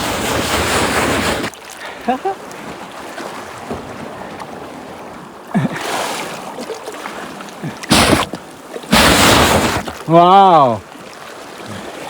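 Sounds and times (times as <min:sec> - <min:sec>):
rush of water: 0:00.0 - 0:12.0
seawater sloshing and splashing: 0:00.0 - 0:12.0.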